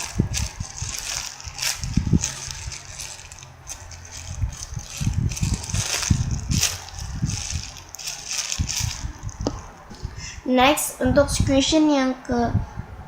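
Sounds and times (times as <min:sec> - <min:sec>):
objects rustling and knocking: 0:00.0 - 0:10.2.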